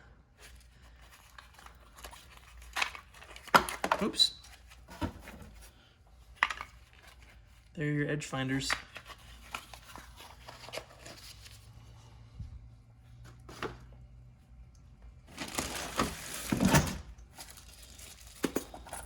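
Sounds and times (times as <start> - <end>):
tools rustling and rattling: 15.3 - 19.0.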